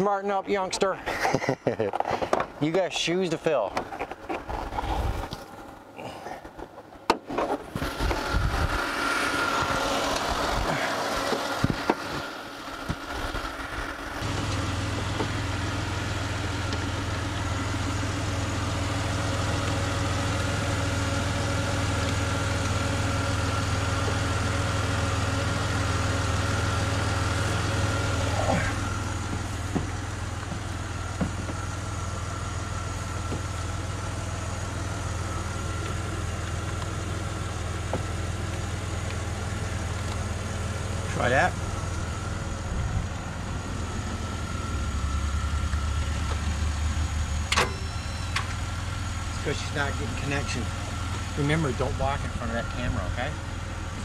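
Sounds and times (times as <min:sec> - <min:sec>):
car engine idling: 0:00.0 - 0:54.0
deep steady hum: 0:07.8 - 0:54.0.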